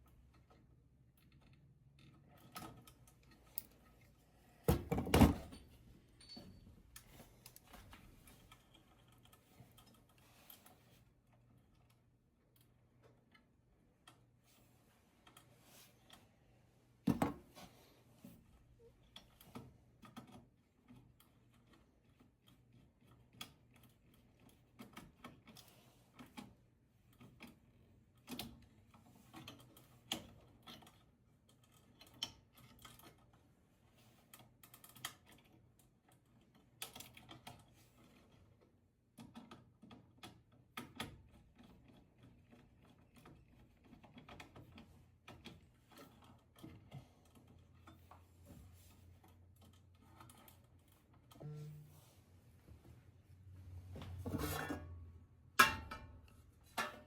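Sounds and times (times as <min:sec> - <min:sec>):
faint low hum: 0:48.9 - 0:56.5.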